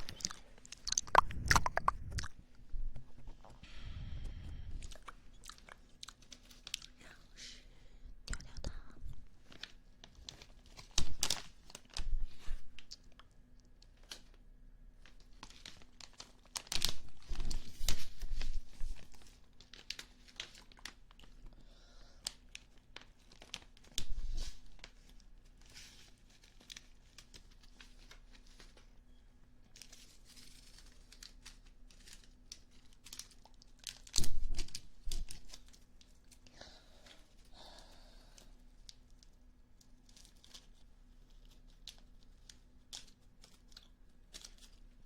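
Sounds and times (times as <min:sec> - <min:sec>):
popping candy crackling: 0:00.0 - 0:02.4, 0:29.8 - 0:36.8
crinkling rustling bursts: 0:00.0 - 0:07.5, 0:08.3 - 0:45.0.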